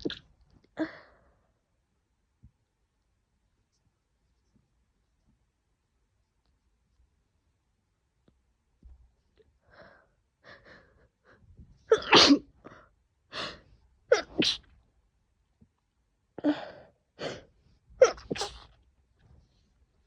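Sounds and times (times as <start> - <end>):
woman sneezing: 11.9 - 12.5, 14.1 - 14.6, 18.0 - 18.7.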